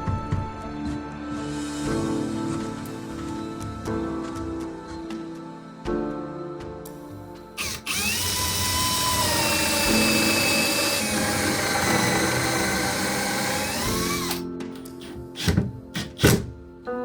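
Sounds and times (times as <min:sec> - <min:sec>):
power drill whining: 0:07.6 - 0:14.4, 0:15.0 - 0:16.5.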